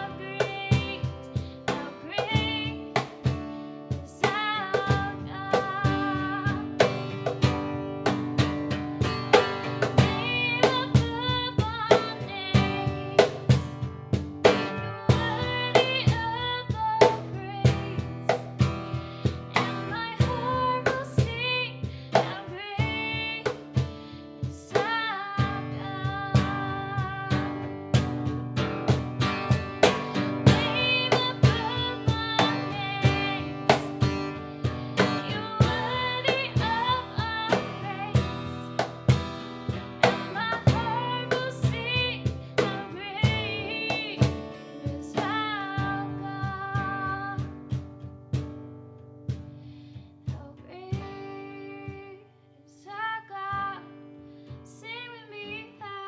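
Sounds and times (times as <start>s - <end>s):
guitar melody: 0.0s - 24.4s, 25.3s - 49.6s
drums keeping a beat: 0.0s - 48.7s, 49.3s - 52.1s.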